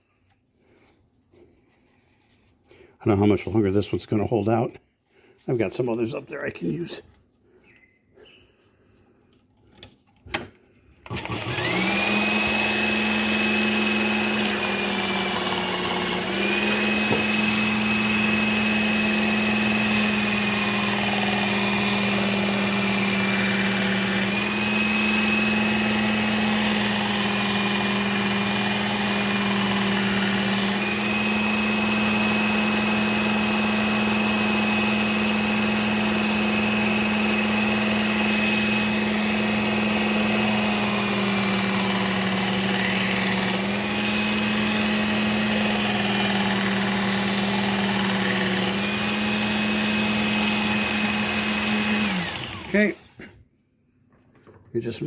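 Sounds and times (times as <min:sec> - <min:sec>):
belt sharpener motor whining: 0:11.0 - 0:53.4.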